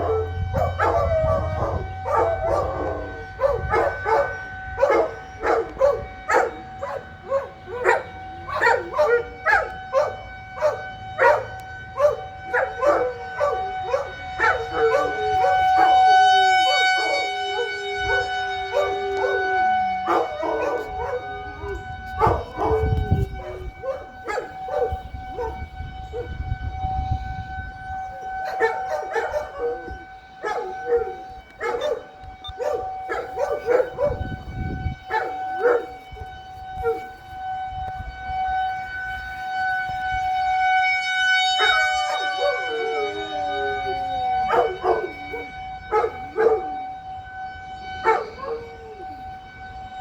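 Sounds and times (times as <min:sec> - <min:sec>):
dog barking: 0:00.0 - 0:25.6, 0:28.4 - 0:34.3, 0:35.1 - 0:36.2, 0:41.5 - 0:46.8, 0:48.0 - 0:48.6
warning siren steady tone: 0:00.0 - 0:50.0.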